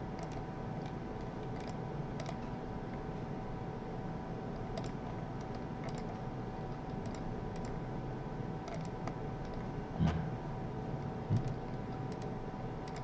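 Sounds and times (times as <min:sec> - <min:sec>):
computer hum: 0:00.0 - 0:13.0
mouse and keyboard clicks: 0:00.2 - 0:02.4, 0:04.8 - 0:06.2.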